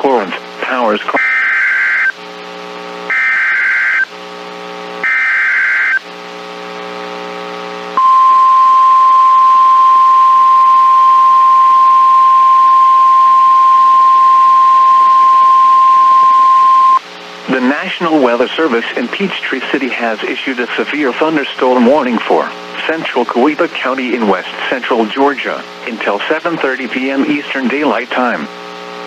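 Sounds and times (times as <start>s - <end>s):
low buzz: 7.9s - 17.0s
steady alarm tone: 8.0s - 17.0s.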